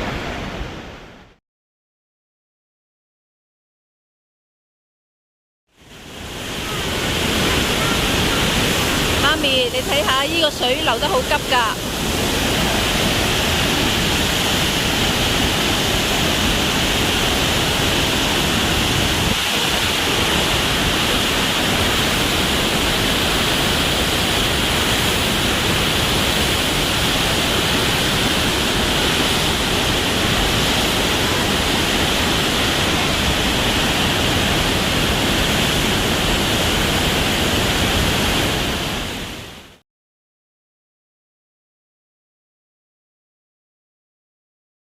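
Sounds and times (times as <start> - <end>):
floodwater rushing: 5.8 - 39.8.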